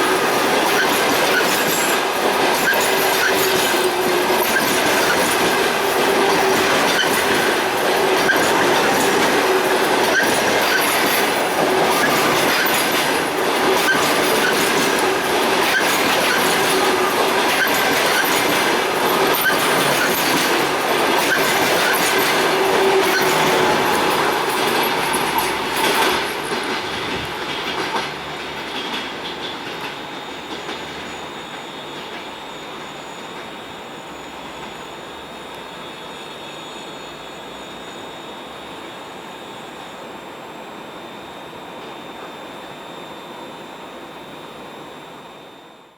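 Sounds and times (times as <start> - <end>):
train wheels clattering over rail joints: 0.0 - 32.3.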